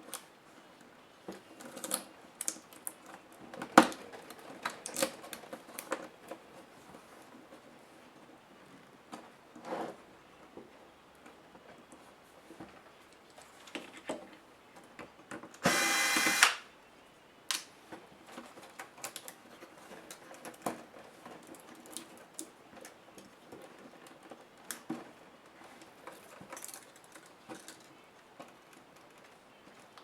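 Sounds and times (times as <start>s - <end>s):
electric screwdriver running: 15.6s - 16.6s.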